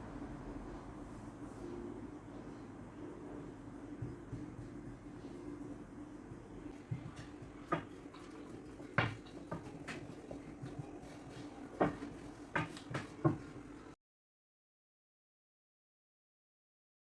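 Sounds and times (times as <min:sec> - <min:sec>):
steady low hum: 0:00.0 - 0:14.0
kitchen knocks and taps: 0:06.8 - 0:10.9, 0:11.8 - 0:13.6.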